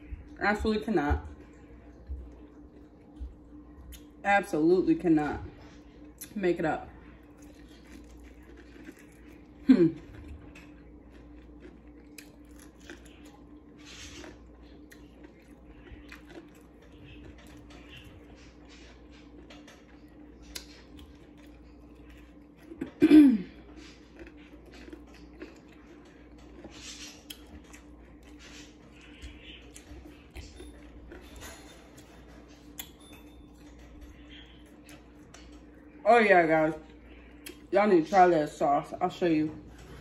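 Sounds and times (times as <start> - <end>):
steady low hum: 0.0 - 40.0
person chewing crunchy food: 7.0 - 36.0, 36.9 - 37.7.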